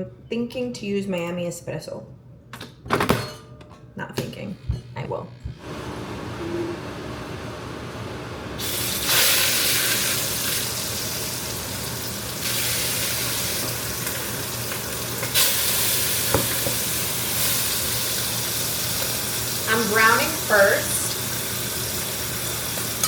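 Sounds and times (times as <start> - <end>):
meat sizzling in a pan: 8.6 - 23.0.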